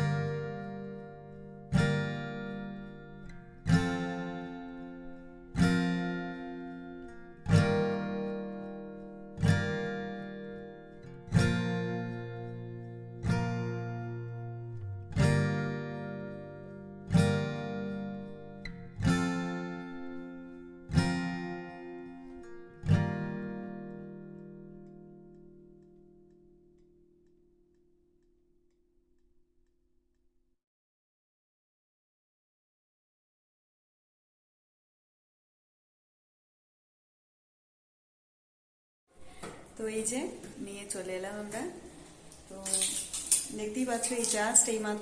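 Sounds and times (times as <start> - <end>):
slow acoustic guitar chords: 0.0 - 29.3.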